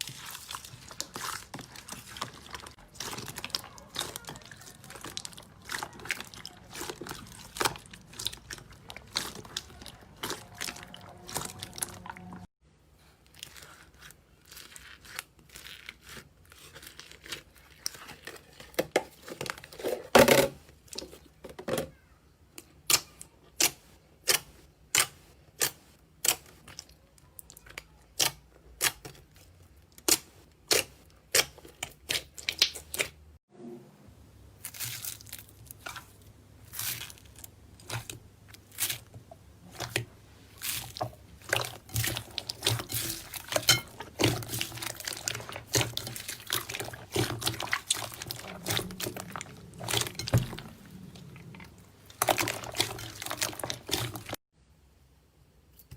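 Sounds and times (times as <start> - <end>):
slime popping and crackling: 0.0 - 12.4, 30.0 - 33.2, 40.6 - 50.8, 51.4 - 54.4.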